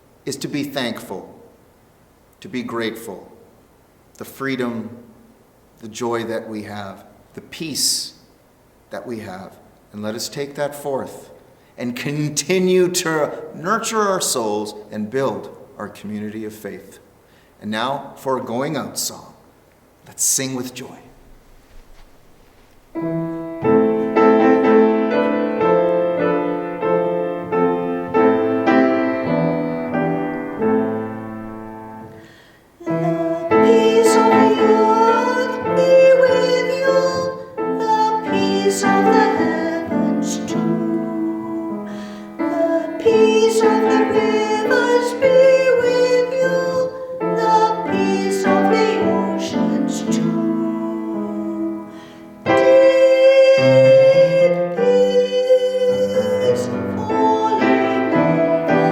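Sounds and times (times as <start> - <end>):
piano playing a hymn: 22.9 - 58.9
person singing: 27.8 - 30.9, 32.8 - 58.9.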